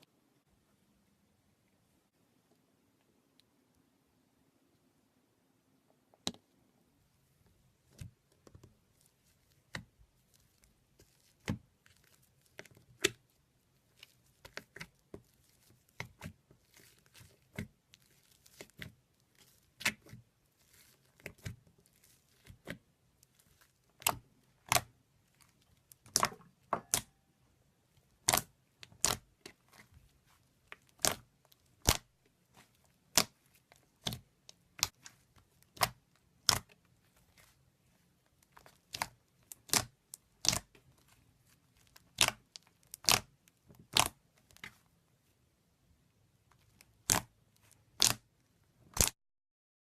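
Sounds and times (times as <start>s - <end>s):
slime popping and clicking: 26.0s - 27.1s, 42.1s - 44.2s, 47.9s - 48.2s, 48.9s - 49.1s.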